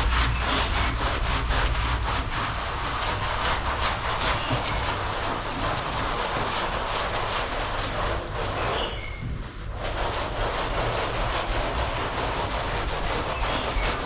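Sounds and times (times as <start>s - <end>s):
rug being scrubbed in water: 0.0s - 14.0s.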